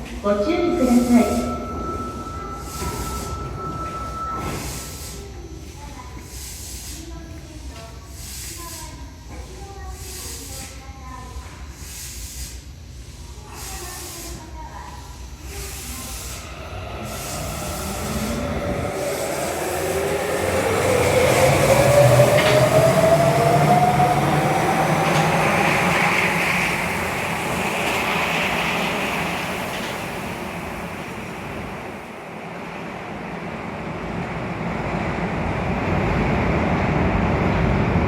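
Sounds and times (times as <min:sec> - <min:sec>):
low train running rumble: 0:00.0 - 0:38.0
train motors whining: 0:12.6 - 0:32.1.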